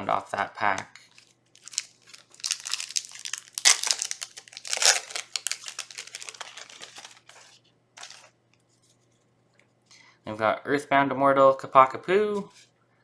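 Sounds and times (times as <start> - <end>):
foil wrapper crinkling and tearing: 1.0 - 8.3.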